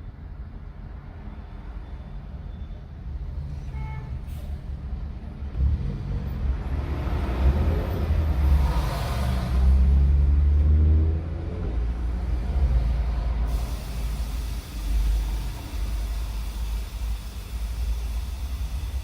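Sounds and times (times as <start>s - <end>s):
large vehicle passing: 5.5s - 13.6s.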